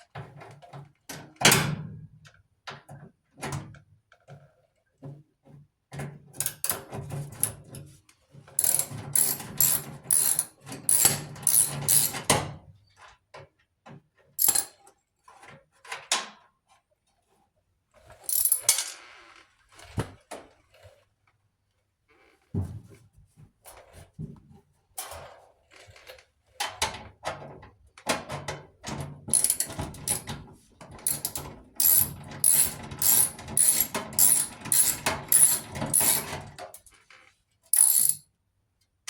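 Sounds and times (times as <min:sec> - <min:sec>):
socket ratchet clicking: 0:08.6 - 0:12.2, 0:14.4 - 0:14.7, 0:18.3 - 0:18.7, 0:29.3 - 0:30.3, 0:31.0 - 0:36.3, 0:37.8 - 0:38.2.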